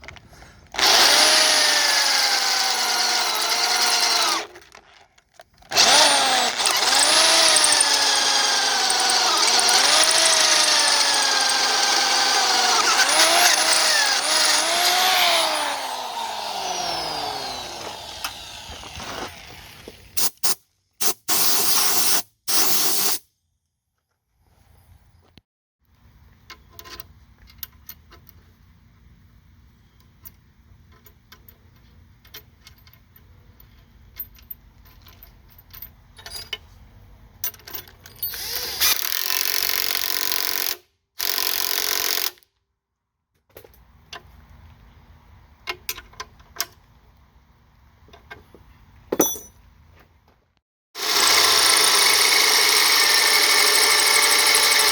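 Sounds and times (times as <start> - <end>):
electric drill drilling: 0.8 - 4.5, 5.7 - 19.9, 38.4 - 39.3, 51.0 - 54.9.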